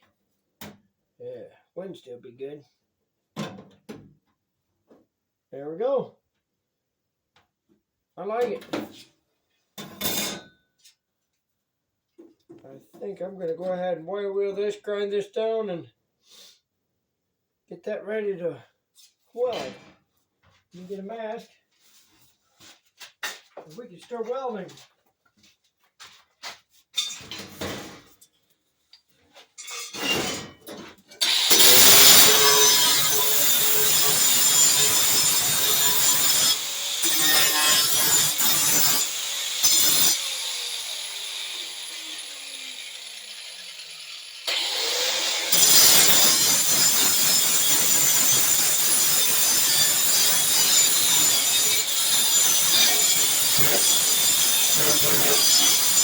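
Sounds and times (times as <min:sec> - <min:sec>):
grinder grinding sheet metal: 0:31.2 - 0:56.0.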